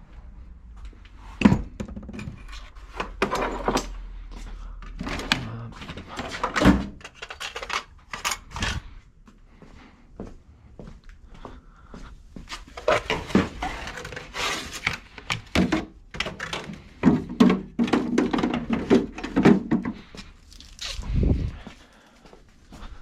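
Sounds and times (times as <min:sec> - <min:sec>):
tools knocking and clattering: 0:01.4 - 0:04.0, 0:04.9 - 0:08.8, 0:12.8 - 0:20.1.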